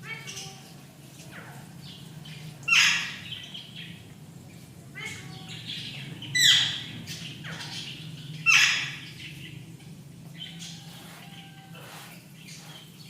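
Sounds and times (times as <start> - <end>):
parrot squawking: 2.7 - 3.3, 6.3 - 9.2.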